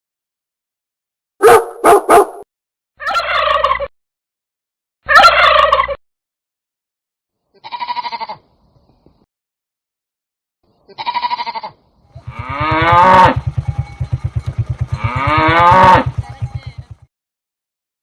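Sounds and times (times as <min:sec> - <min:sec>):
dog barks: 0:01.4 - 0:03.3, 0:05.1 - 0:05.6
turkey gobbles: 0:03.0 - 0:03.9, 0:05.1 - 0:06.0
short bleat: 0:07.5 - 0:08.4, 0:10.9 - 0:13.3.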